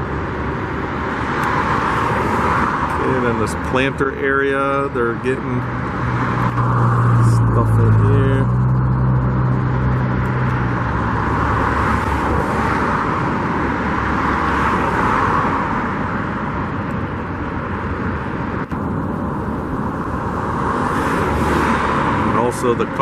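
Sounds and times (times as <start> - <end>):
passing road traffic: 0.0 - 23.0.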